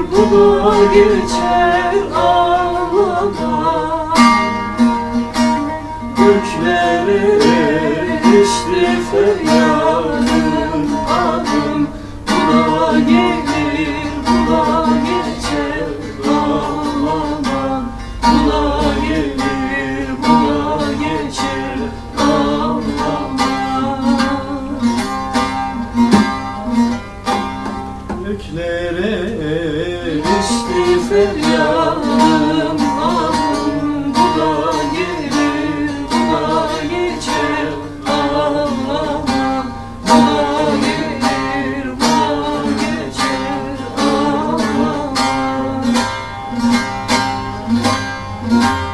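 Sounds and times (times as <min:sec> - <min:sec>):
plucked string melody: 0:00.0 - 0:48.9
strummed rhythm: 0:00.0 - 0:48.9.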